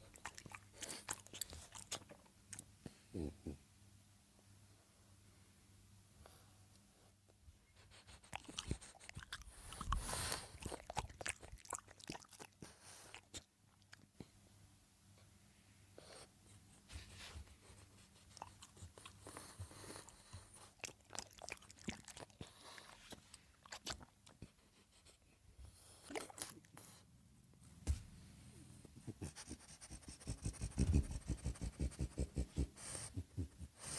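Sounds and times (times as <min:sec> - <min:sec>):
dog chewing and crunching food: 0:00.0 - 0:02.7, 0:08.0 - 0:14.1, 0:18.2 - 0:24.6.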